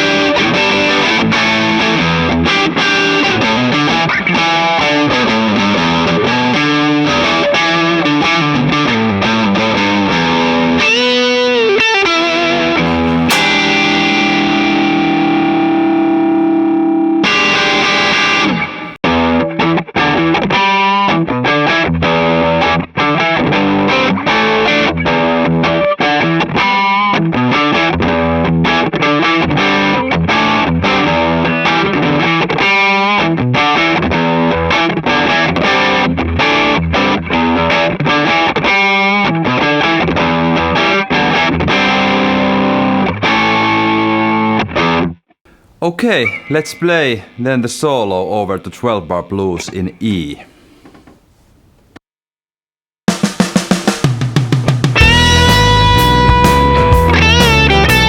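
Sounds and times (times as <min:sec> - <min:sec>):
distorted electric guitar riffs: 0:12.8 - 0:16.5, 0:55.0 - 0:58.0.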